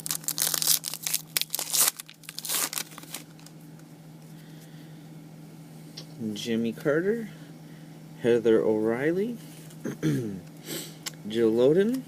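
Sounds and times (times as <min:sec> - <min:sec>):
card pack wrapper tearing: 0:00.0 - 0:03.5
low steady hum: 0:00.0 - 0:12.0.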